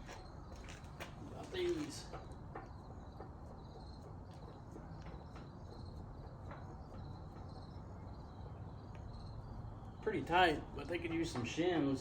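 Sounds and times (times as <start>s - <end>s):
crickets chirping: 0.0s - 11.1s.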